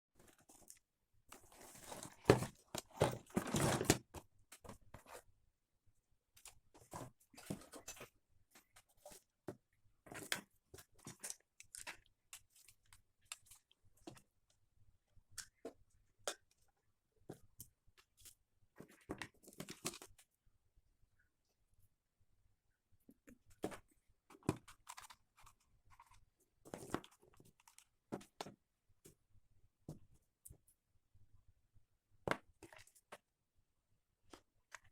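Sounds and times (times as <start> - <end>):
crunching and crinkling handling noises: 0.2 - 5.3.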